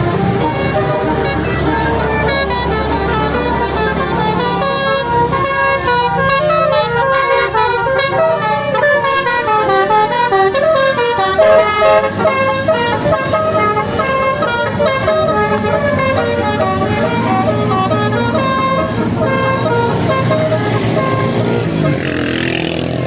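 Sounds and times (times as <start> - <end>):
multi-tone air horn melody: 0.0 - 23.0.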